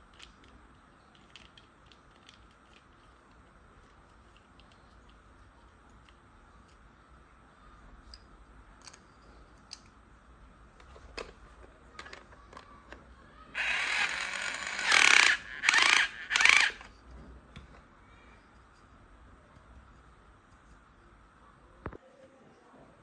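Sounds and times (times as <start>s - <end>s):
toy electric drill whirring: 13.5s - 17.0s.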